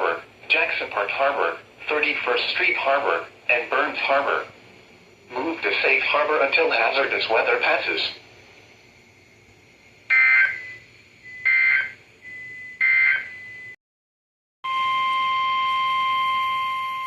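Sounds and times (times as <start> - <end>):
screechy digital data bursts: 10.1 - 10.8
steady warning alarm tone: 10.1 - 13.8, 14.7 - 17.0.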